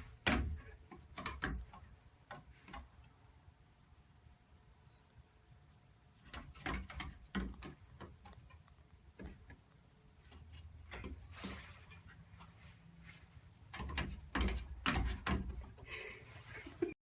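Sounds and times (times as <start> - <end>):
faint clicks and knocks: 0.0 - 3.2, 6.2 - 12.6, 13.6 - 15.8.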